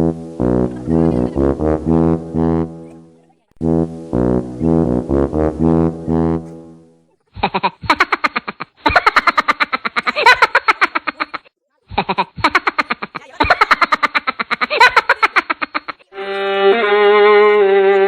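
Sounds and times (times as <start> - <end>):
brass-like background music: 0.0 - 3.0, 3.6 - 7.0.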